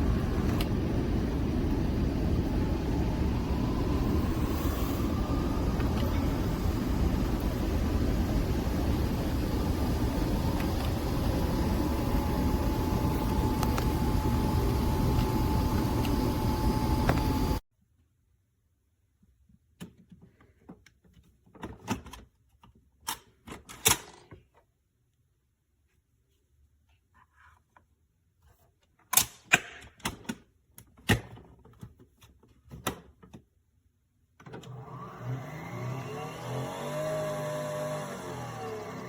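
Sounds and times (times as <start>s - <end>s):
coffee machine motor whirring: 0.0s - 17.6s, 34.7s - 39.0s
plastic parts clicking and knocking: 28.9s - 33.5s.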